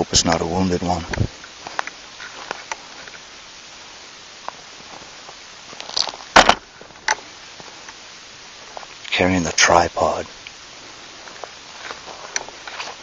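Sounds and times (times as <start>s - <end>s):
footsteps: 1.1s - 3.3s, 4.4s - 8.0s, 8.6s - 9.2s, 10.2s - 13.0s.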